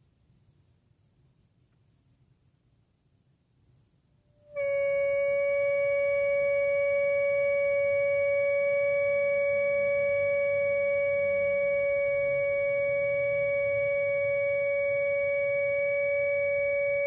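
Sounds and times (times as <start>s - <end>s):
steady high-pitched tone from car: 4.3s - 17.0s.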